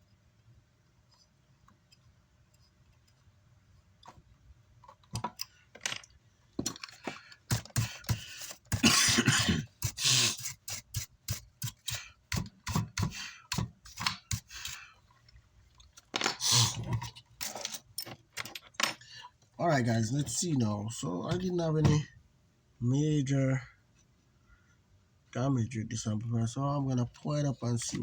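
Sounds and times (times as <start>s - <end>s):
clicks knocks and scrapes of wires: 3.9s - 8.8s, 10.9s - 19.0s, 27.7s - 28.0s.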